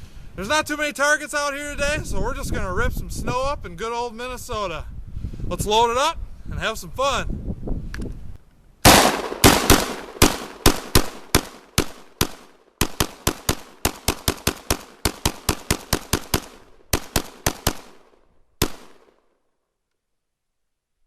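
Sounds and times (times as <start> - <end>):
pistol shots: 8.8 - 19.2.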